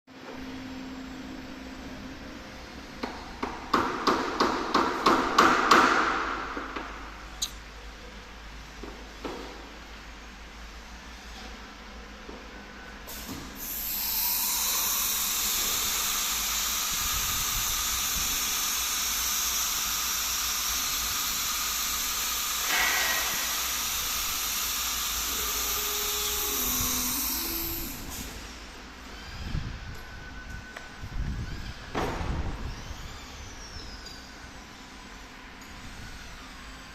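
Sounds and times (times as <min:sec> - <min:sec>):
router spindle high-pitched whine: 0:23.2 - 0:28.4.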